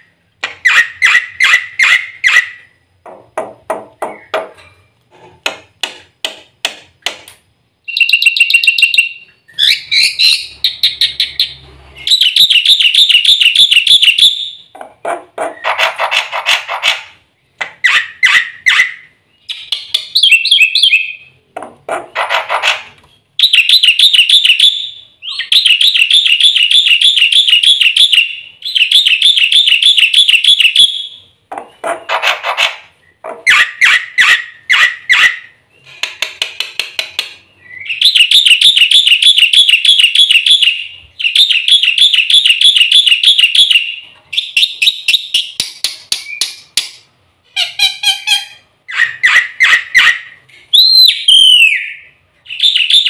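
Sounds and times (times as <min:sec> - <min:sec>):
myna bird singing trills: 0:07.8 - 0:14.8.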